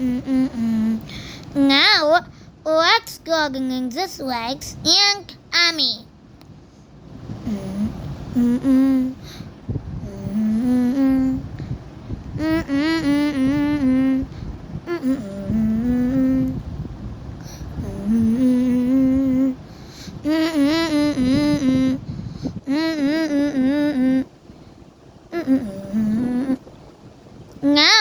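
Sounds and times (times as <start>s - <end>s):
person humming a tune: 0.0s - 1.3s, 7.4s - 9.2s, 10.0s - 11.6s, 12.3s - 16.7s, 17.6s - 19.6s, 20.2s - 24.3s, 25.3s - 26.7s, 27.6s - 28.0s.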